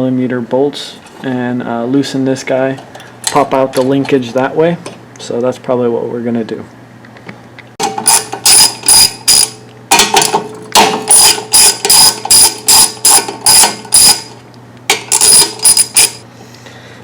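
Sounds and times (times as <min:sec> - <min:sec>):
ratchet wrench clicking: 0:08.0 - 0:09.6, 0:11.1 - 0:14.3, 0:15.1 - 0:16.2.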